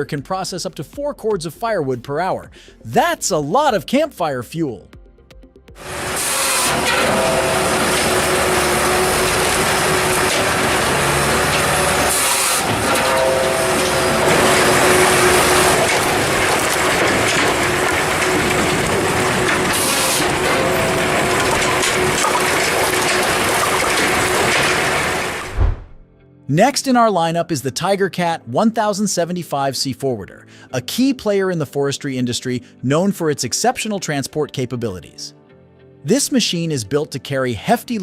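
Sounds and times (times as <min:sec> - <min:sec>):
firewood processor engine and hydraulics: 0:05.8 - 0:26.0.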